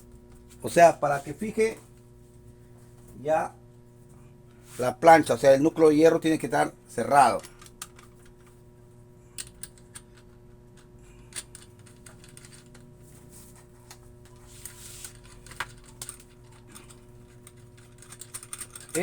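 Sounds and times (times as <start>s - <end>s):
steady low hum: 0.0s - 19.0s
small metal parts clicking: 7.2s - 8.6s, 9.4s - 12.9s, 14.6s - 19.0s.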